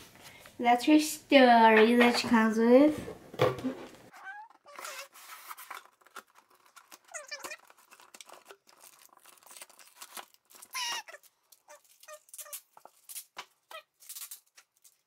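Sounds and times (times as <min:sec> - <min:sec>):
packaging crinkling and tearing: 0:04.2 - 0:15.0.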